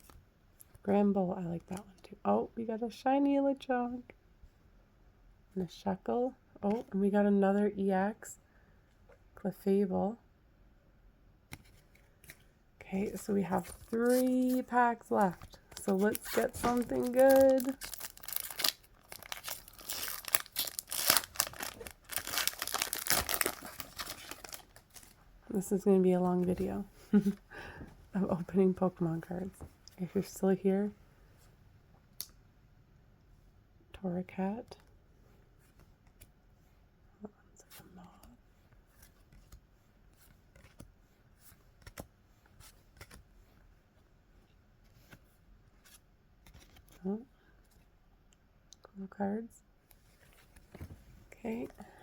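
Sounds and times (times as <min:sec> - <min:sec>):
trading cards rustling: 0:11.5 - 0:25.8
foil wrapper crinkling and tearing: 0:15.8 - 0:25.1.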